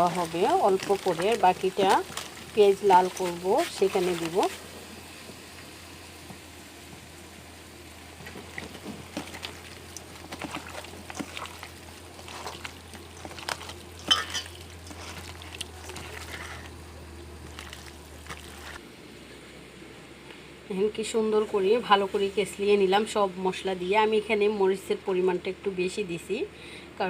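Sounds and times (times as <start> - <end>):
hands squelching meat in bowl: 0.0 - 4.6, 8.2 - 18.8.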